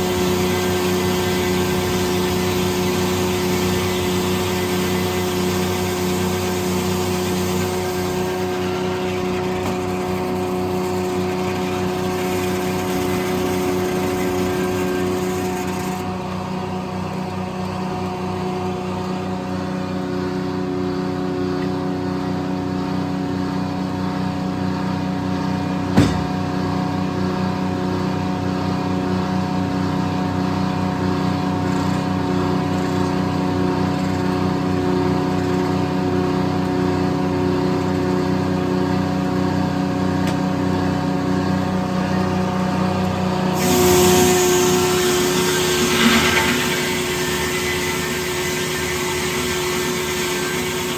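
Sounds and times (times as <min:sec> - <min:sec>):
sawmill engine running: 0:00.0 - 0:50.9
sharp knock: 0:26.0 - 0:26.5.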